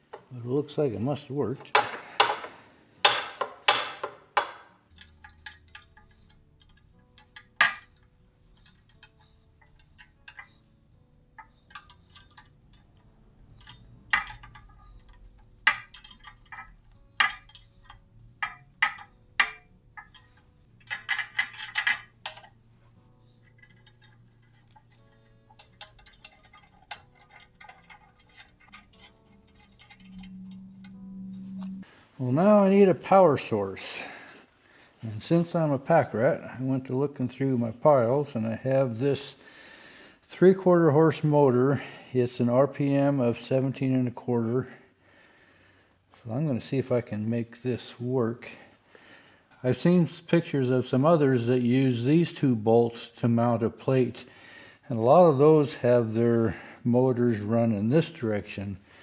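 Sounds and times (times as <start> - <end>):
faint music: 0.0 - 59.0
metallic clinks of hand tools: 3.9 - 10.6, 11.4 - 13.0, 13.6 - 22.5, 23.4 - 31.0.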